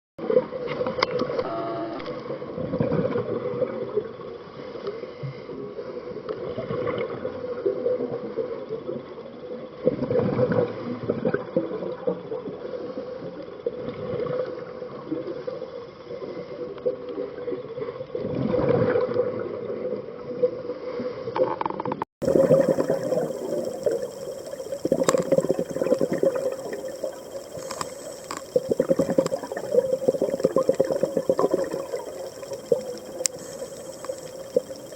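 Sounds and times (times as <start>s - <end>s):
bubbles gurgling: 22.2s - 34.9s
steady hum: 22.2s - 34.9s
fine crackle: 22.3s - 34.9s.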